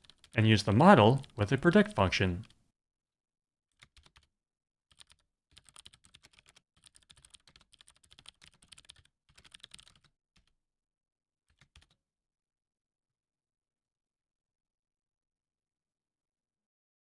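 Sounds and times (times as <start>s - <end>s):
typing on computer keyboard: 3.8s - 4.3s, 4.9s - 10.5s.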